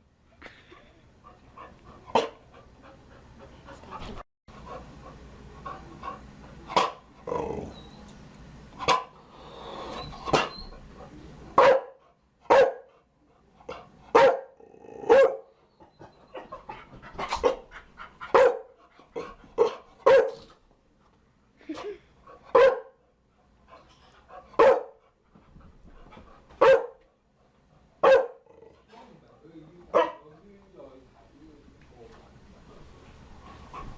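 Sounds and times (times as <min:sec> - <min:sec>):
dog barking: 0:11.6 - 0:12.9, 0:14.2 - 0:15.5, 0:18.3 - 0:18.7, 0:19.6 - 0:20.5, 0:22.5 - 0:23.0, 0:24.6 - 0:25.0, 0:26.6 - 0:27.0, 0:28.0 - 0:28.5, 0:29.9 - 0:30.2.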